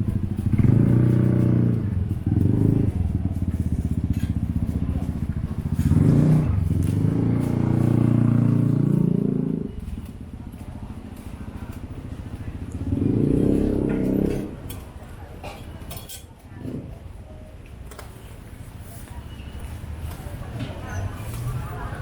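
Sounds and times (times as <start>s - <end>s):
small motorcycles passing: 0.0s - 14.8s.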